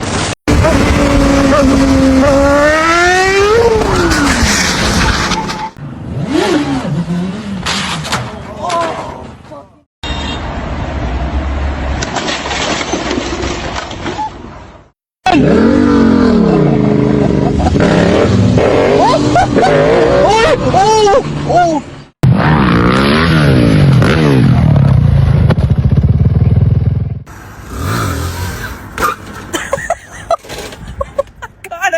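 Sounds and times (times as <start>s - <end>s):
engine revving: 0.5s - 8.1s, 15.3s - 21.6s, 22.2s - 25.6s, 27.3s - 29.4s
loud rushing noise: 3.2s - 5.8s
motor revving: 27.3s - 29.0s.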